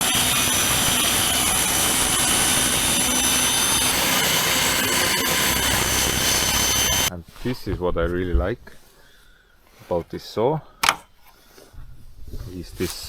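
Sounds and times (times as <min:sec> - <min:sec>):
table saw running: 0:00.0 - 0:07.1.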